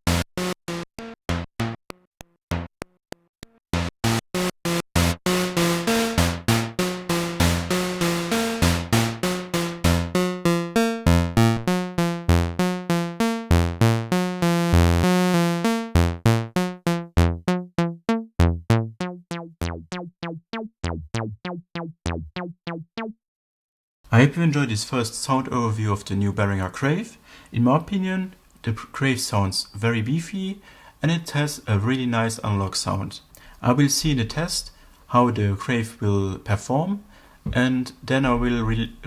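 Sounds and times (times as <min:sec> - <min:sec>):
synthesizer plucked note sequence: 0:00.0 - 0:23.2, 0:38.2 - 0:39.0.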